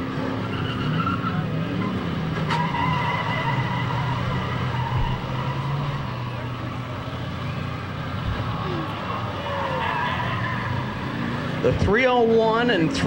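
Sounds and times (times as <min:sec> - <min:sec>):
car engines revving: 0:00.0 - 0:13.0
tires skidding: 0:00.0 - 0:13.0
high squeal: 0:00.4 - 0:06.5, 0:08.4 - 0:11.3.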